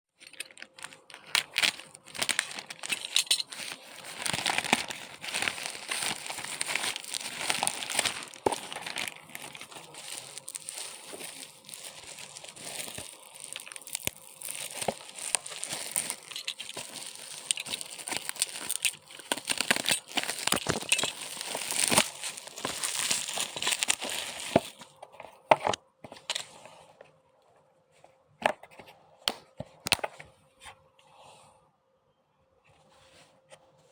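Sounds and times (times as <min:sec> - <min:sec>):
packaging crinkling and tearing: 0:00.2 - 0:25.0.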